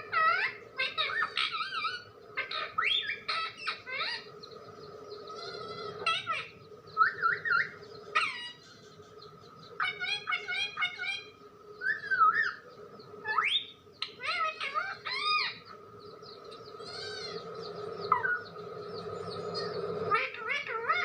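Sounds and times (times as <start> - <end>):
background hum: 0.0 - 21.0
parrot whistling and chirping: 0.1 - 4.3, 5.3 - 8.7, 9.8 - 12.6, 13.2 - 15.7, 18.1 - 18.5.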